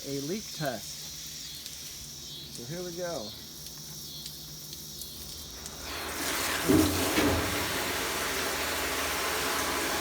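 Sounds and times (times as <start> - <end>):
hose water into metal drum: 4.2 - 10.0.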